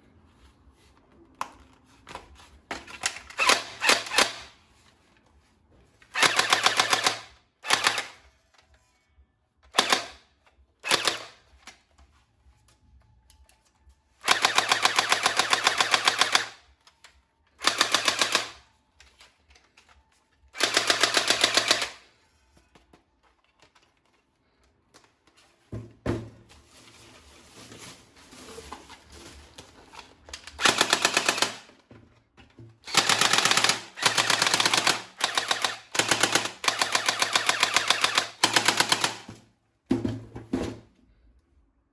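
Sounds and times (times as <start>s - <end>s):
toy gun firing rapid clicks: 3.3s - 4.5s, 6.1s - 8.2s, 9.7s - 10.2s, 10.8s - 11.4s, 14.2s - 16.6s, 17.6s - 18.6s, 20.6s - 22.0s, 30.6s - 31.7s, 32.9s - 39.3s.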